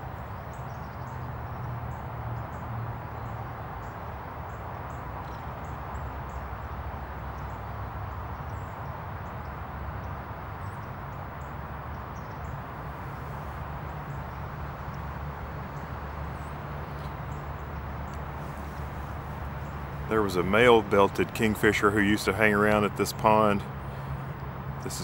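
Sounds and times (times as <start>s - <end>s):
outdoor background rumble: 0.0s - 25.0s.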